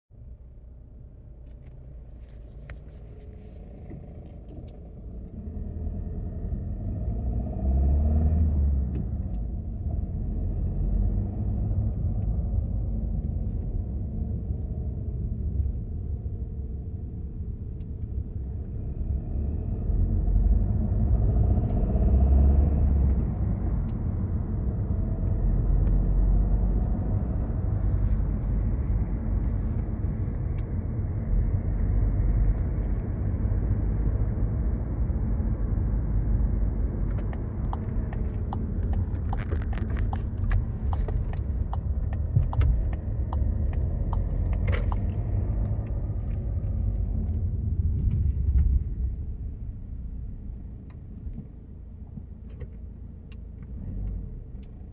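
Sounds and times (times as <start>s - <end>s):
engine and road rumble: 0.0s - 54.9s
cockpit trim rattling: 37.1s - 46.4s.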